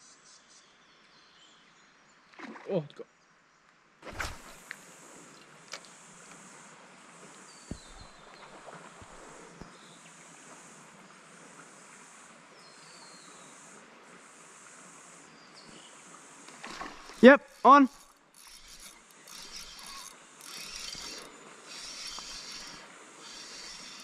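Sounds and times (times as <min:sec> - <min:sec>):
cicadas droning: 0:04.2 - 0:24.0
faint clicks: 0:16.4 - 0:24.0.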